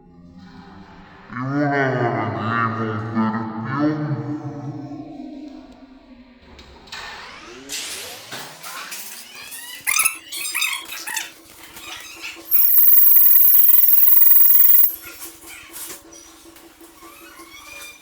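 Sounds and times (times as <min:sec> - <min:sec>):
fire alarm high tone: 0:09.9 - 0:10.2, 0:12.5 - 0:15.0
sliding squeals: 0:09.9 - 0:10.8.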